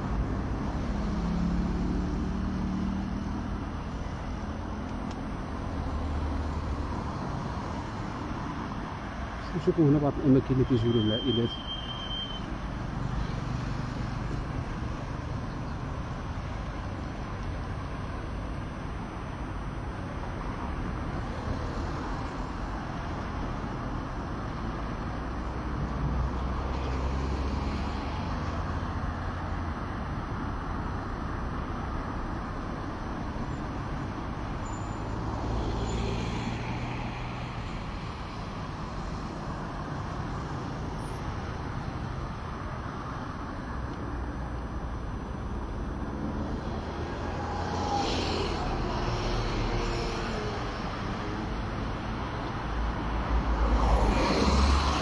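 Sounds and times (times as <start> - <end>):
loud rumbling vehicle passing: 0.0 - 8.4, 44.9 - 55.0
passing vehicles: 0.0 - 55.0.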